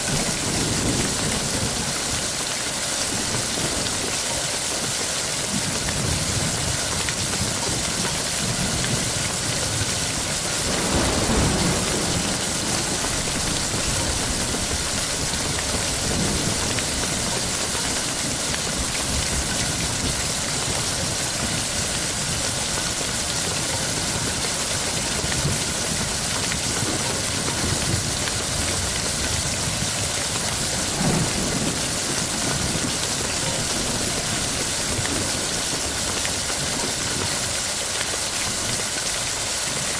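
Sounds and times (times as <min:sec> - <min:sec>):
heavy rain hissing: 0:00.0 - 0:39.9
thunder rumbling: 0:08.6 - 0:24.5, 0:25.2 - 0:37.2.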